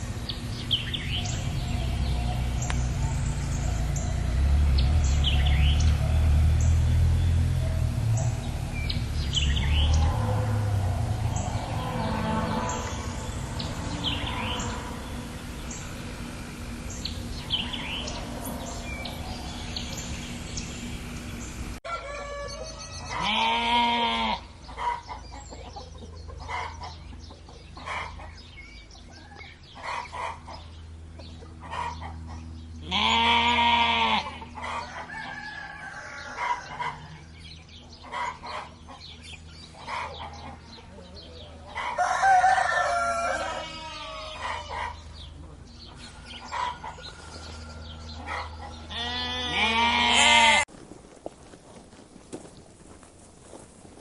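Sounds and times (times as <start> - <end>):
small birds chirping: 0.0 - 21.8, 24.4 - 35.0, 35.6 - 42.0, 42.8 - 50.7
farm animal drawn-out calls: 0.0 - 27.1, 31.6 - 50.7
outdoor background noise: 0.0 - 54.0.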